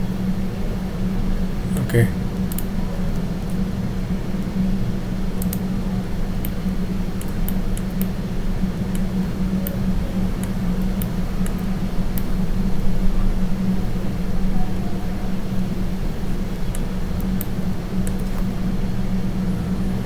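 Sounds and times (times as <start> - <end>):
electrical hum and hiss: 0.0 - 20.0.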